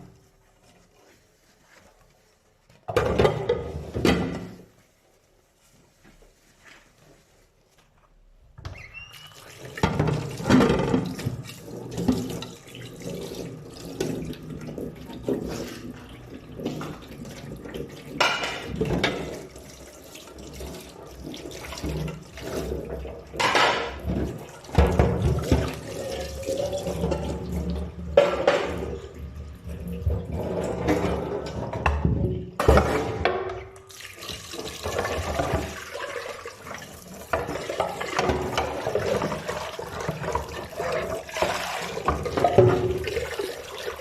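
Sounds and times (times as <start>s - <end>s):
tap running into sink: 8.6s - 14.5s
dishes clattering: 18.2s - 19.4s, 23.4s - 27.6s, 28.2s - 28.9s.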